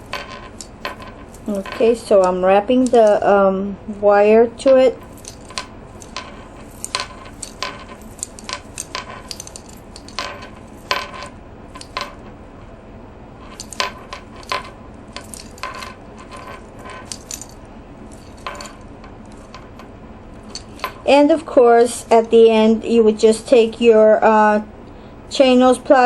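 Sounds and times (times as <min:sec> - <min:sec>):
beads and wire clinking: 0:00.0 - 0:03.4, 0:04.5 - 0:12.4, 0:13.4 - 0:21.5.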